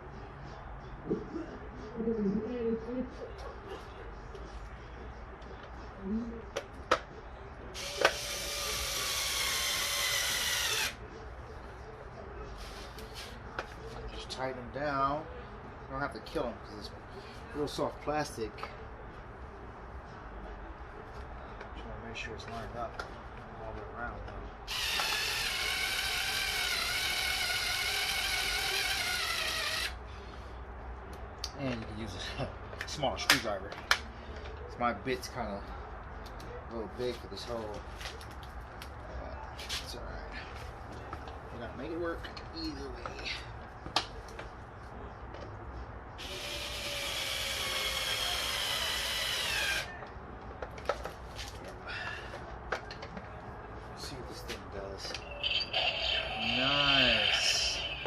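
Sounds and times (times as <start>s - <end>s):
cordless drill whining: 7.8s - 11.0s, 24.7s - 30.0s, 46.2s - 49.9s.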